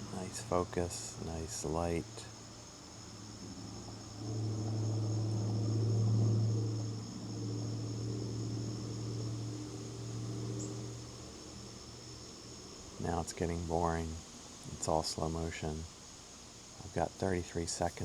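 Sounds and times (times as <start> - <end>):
insects trilling: 0.0 - 18.0
low motor hum: 3.1 - 13.3.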